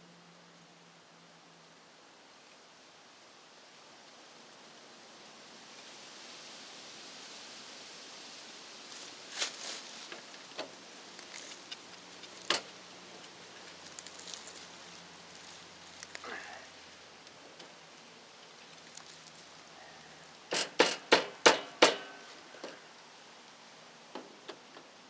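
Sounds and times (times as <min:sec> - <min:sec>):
faint steady hiss: 0:00.0 - 0:25.0
sharp clicks and knocks: 0:20.5 - 0:22.8.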